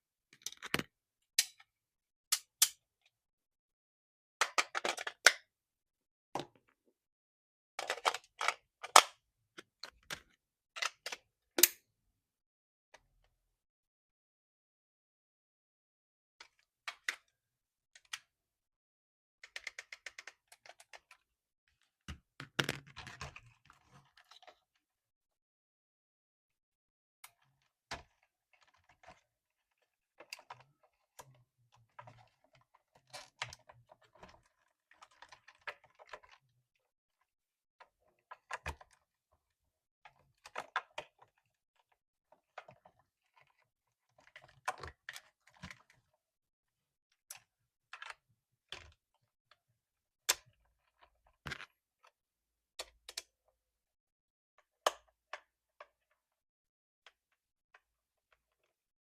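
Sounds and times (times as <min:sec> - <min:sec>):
clicks and rattles of plastic toys: 0:04.4 - 0:05.5, 0:07.8 - 0:11.8, 0:19.4 - 0:21.2.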